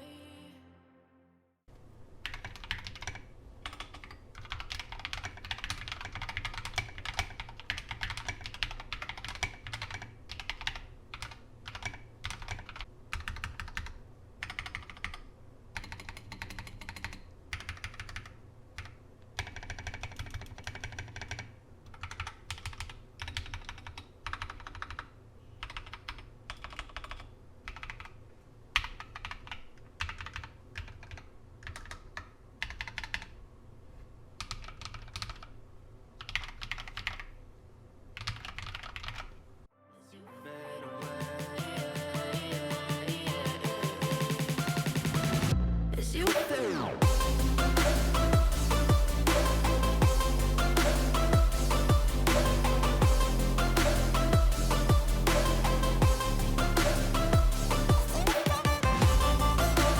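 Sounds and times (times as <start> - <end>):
typing on mechanical keyboard: 2.2 - 28.2, 28.8 - 33.3, 34.4 - 35.5, 36.2 - 37.4, 38.2 - 39.4.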